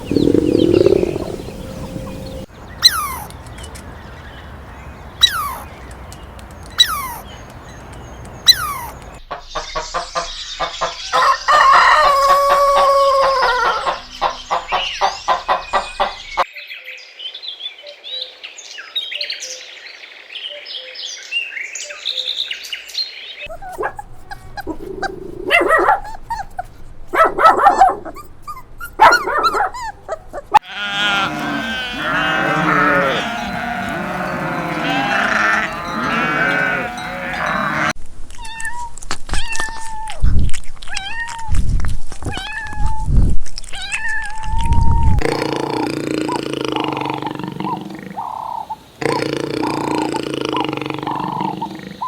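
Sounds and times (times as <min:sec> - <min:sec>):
high chirping: 0:00.0 - 0:03.8, 0:30.8 - 0:37.9
rooster crowing: 0:11.2 - 0:14.1, 0:30.6 - 0:37.9
sharp animal calls falling in pitch: 0:11.2 - 0:14.7, 0:30.6 - 0:37.9
dog barking: 0:23.5 - 0:30.6.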